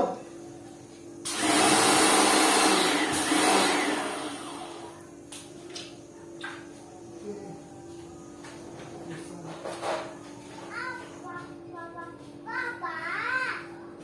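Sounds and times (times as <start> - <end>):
pressure washer spraying: 1.2 - 4.9.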